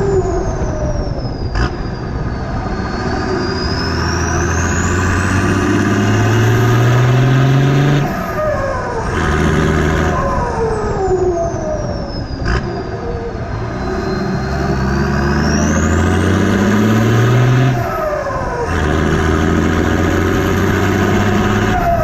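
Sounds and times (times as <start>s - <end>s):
diesel engine revving: 0.0s - 22.0s
turbo whistling: 10.1s - 16.9s
high-pitched whistle: 10.2s - 16.0s.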